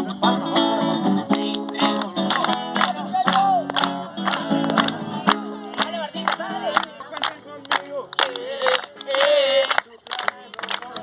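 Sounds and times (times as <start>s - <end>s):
acoustic guitar strumming: 0.0s - 6.9s
group of voices: 0.0s - 11.0s.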